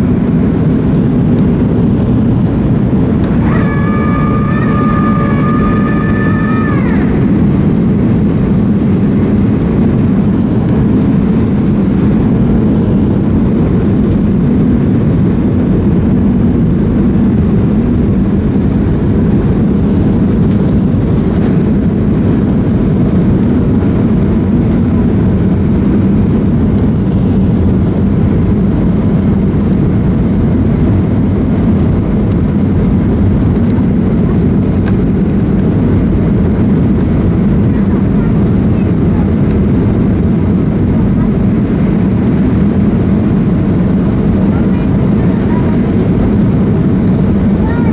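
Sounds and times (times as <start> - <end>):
airplane cabin engine rumble: 0.0 - 47.9.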